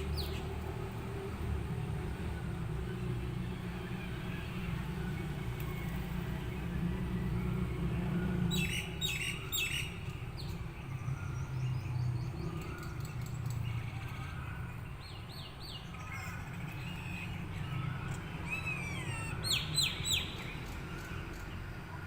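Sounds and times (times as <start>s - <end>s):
birds chirping: 0.0s - 22.0s.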